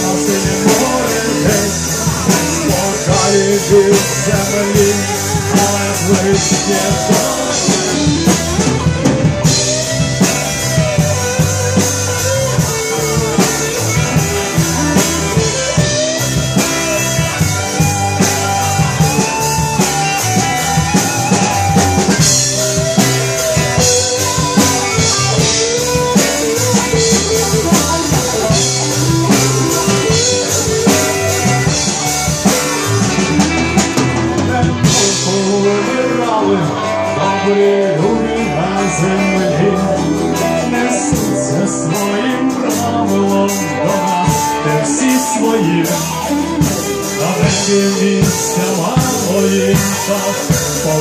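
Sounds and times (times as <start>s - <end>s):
drum kit beat: 0.0s - 51.0s
guitar: 0.0s - 51.0s.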